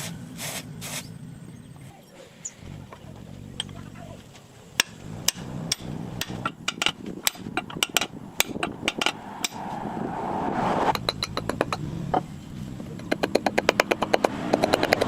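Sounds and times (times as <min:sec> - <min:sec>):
rising noise: 0:04.8 - 0:14.6
tool knocking on wood: 0:13.0 - 0:15.0.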